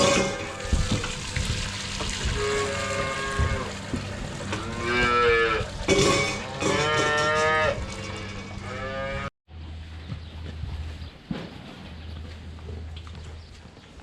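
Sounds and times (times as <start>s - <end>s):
cattle mooing: 2.2s - 9.3s.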